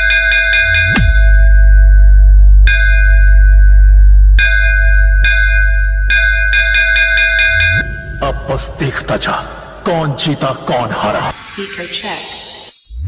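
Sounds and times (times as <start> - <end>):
heavy sub-bass: 0.0 - 6.8
bell-like synth tone: 0.0 - 9.1.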